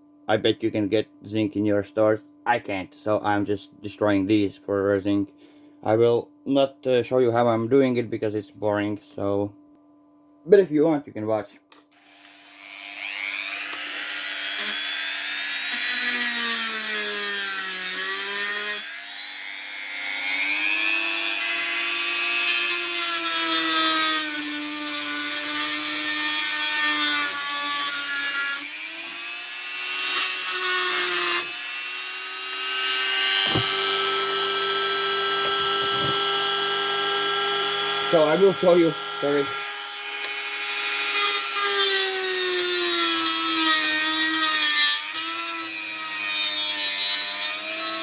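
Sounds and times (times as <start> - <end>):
power tool whining cutting metal: 11.9 - 48.0.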